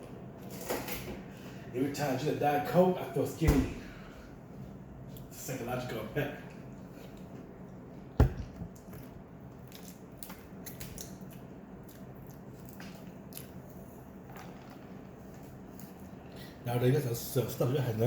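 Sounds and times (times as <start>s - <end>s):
knock on a table: 8.2s - 8.7s.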